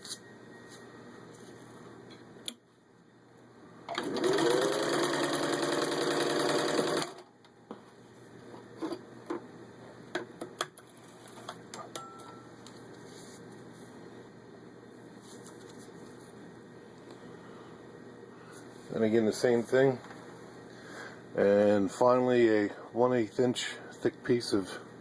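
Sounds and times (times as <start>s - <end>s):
sewing machine stitching: 3.9s - 7.2s.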